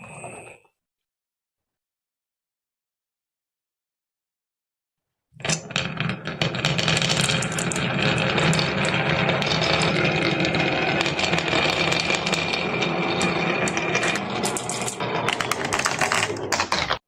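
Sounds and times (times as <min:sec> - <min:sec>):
marbles rolling down track: 0:05.4 - 0:17.0.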